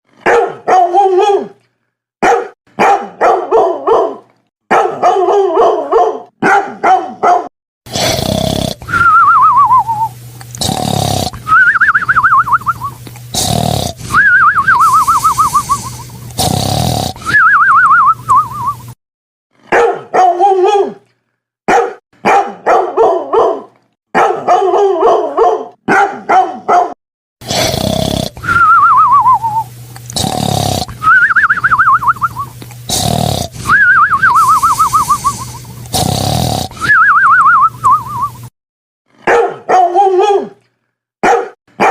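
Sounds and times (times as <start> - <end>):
dog barking: 0.2 - 1.5, 2.2 - 7.5, 19.7 - 21.0, 21.7 - 27.0, 39.2 - 40.6, 41.2 - 41.9
dog whining: 8.8 - 10.2, 10.8 - 18.9, 28.4 - 38.5.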